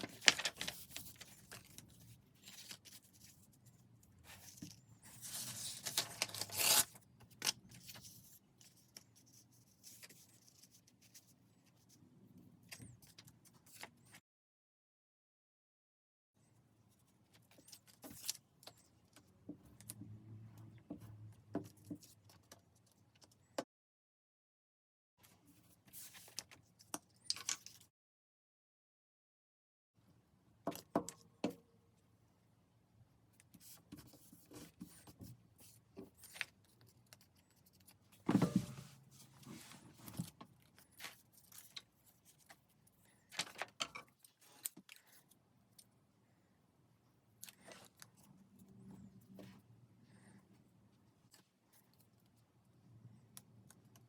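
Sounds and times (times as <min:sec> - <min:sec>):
paper rustling: 0:00.0 - 0:03.7.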